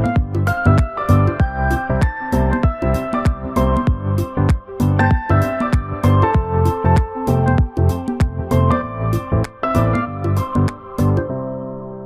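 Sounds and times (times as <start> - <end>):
deep kick drum: 0.0 - 8.7.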